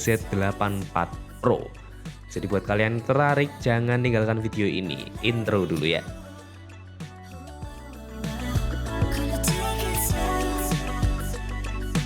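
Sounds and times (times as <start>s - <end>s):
pop r and b music with bass drum: 0.0s - 12.0s.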